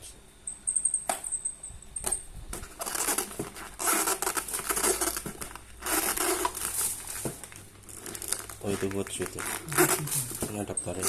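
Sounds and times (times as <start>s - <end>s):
packaging rustling and crinkling: 2.6s - 11.0s.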